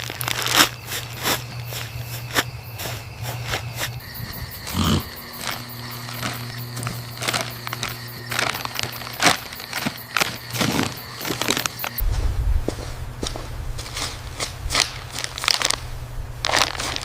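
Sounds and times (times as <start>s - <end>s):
animal call: 3.8s - 9.5s.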